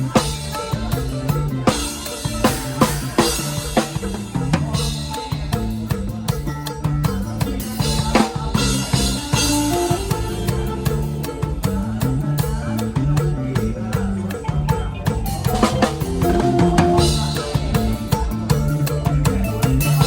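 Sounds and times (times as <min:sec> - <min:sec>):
bass line: 0:00.0 - 0:20.0
drum kit beat: 0:00.0 - 0:20.0
held melody notes: 0:14.5 - 0:20.0.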